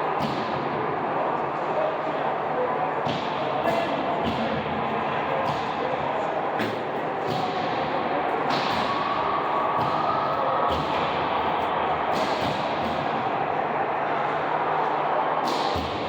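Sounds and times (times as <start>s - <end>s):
sports hall crowd din: 0.0s - 16.0s
sharp knocks and slaps: 3.0s - 4.6s, 6.6s - 7.9s, 8.5s - 9.1s, 9.8s - 11.3s, 12.1s - 13.2s.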